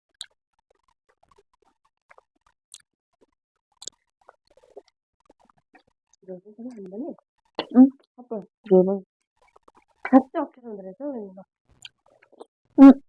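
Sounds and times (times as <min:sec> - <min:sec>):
wet chewing sounds: 0:00.2 - 0:06.9, 0:11.7 - 0:12.5.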